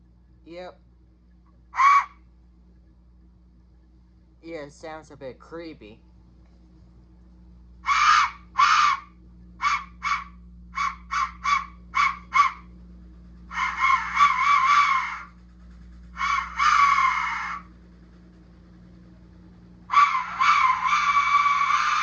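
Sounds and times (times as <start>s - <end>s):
whistle shrieking blasts: 19.9s - 22.0s.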